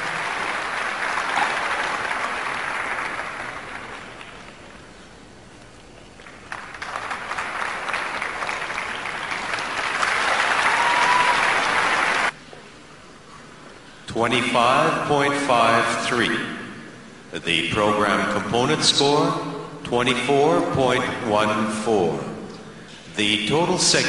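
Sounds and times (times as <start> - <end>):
crowd applauding: 0.0 - 4.9, 6.2 - 12.4.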